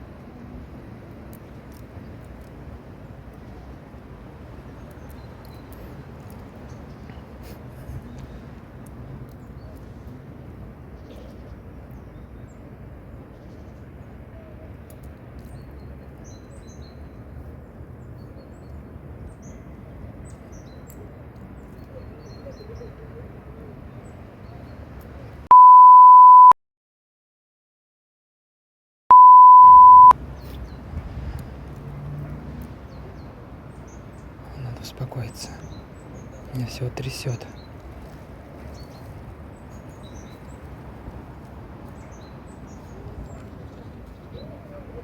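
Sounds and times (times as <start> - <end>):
faint outdoor background noise: 0.0 - 26.5, 29.1 - 45.0
censor bleeps: 25.5 - 26.6, 29.1 - 30.1.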